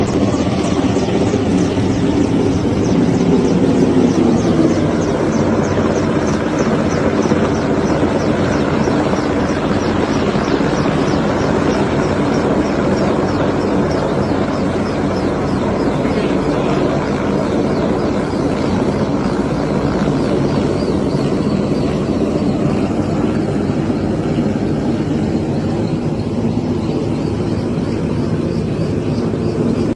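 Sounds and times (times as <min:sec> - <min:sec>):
helicopter rotor and engine: 0:00.0 - 0:29.9.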